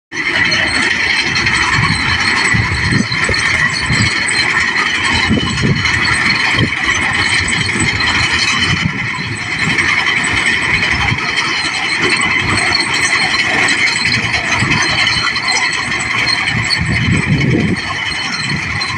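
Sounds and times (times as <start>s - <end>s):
combine harvester rattling: 0.1s - 18.9s.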